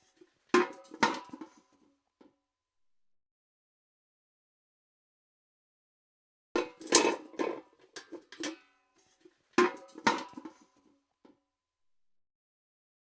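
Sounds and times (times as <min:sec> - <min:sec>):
steel bucket clanking: 0:00.6 - 0:01.6, 0:06.6 - 0:08.7, 0:09.6 - 0:10.7.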